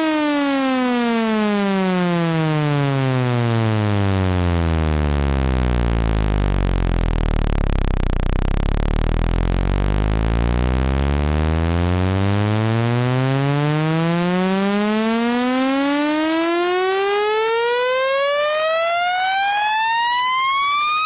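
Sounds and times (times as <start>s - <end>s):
buzzy tone sliding in pitch: 5.6s - 15.7s.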